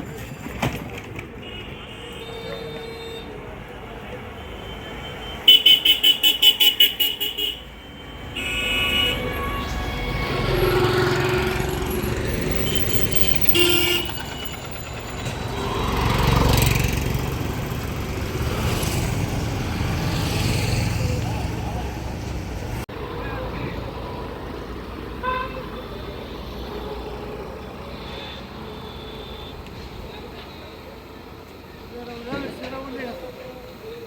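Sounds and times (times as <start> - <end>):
vehicle horn tooting: 1.4 - 3.6, 4.3 - 17.0, 25.2 - 26.5, 27.9 - 30.7
vehicle engines running: 6.8 - 34.0.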